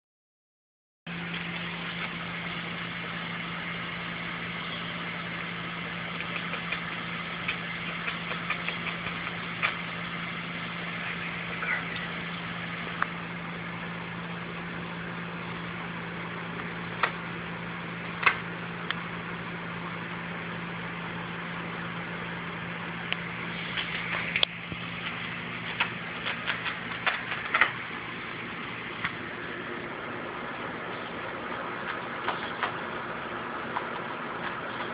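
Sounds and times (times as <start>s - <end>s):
steady low motor hum: 1.1s - 34.9s
sharp clicks: 6.1s - 9.9s.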